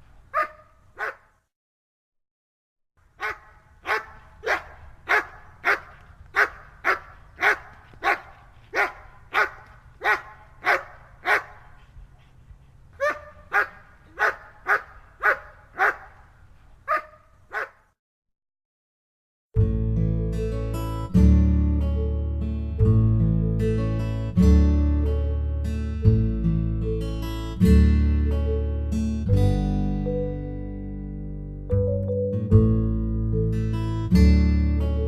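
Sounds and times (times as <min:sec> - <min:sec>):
dog barking: 0:00.3 - 0:01.3, 0:03.2 - 0:11.9, 0:13.0 - 0:17.9.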